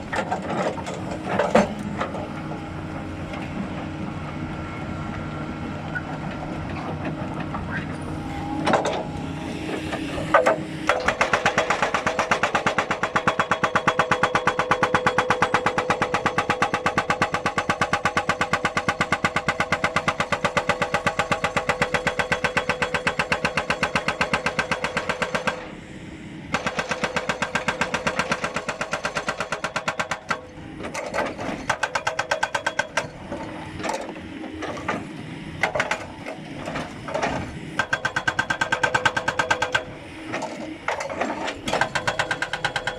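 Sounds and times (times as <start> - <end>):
hydraulic breaker hammering: 10.3 - 25.6, 26.6 - 35.0, 35.6 - 42.9.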